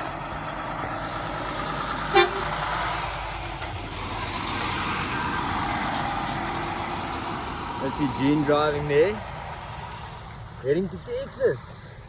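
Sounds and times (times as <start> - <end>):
combine harvester engine: 0.0 - 12.0
short horn toot: 2.1 - 2.5.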